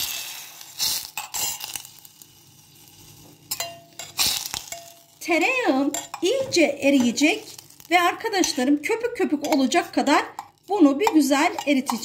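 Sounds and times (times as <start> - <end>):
utensil clinking against pot: 3.5 - 5.0, 5.9 - 6.4, 9.4 - 12.0.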